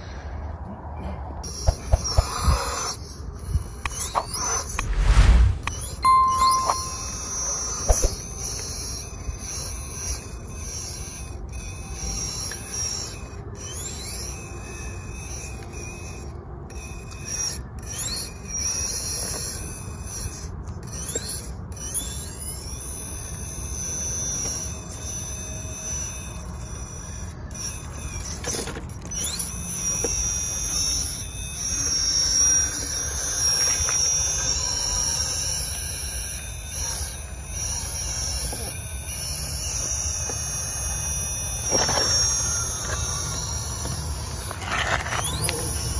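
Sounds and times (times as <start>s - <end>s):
electric motor whining: 18.0s - 45.9s.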